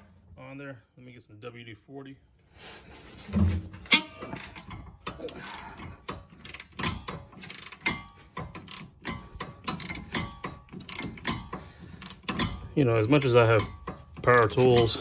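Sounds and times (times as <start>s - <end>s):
ratchet clicking: 4.2s - 15.0s.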